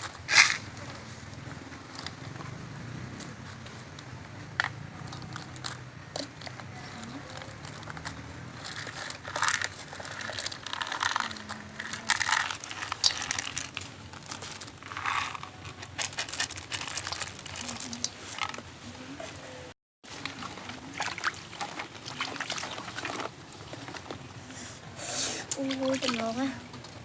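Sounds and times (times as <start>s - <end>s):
crunchy chewing: 0.0s - 18.7s.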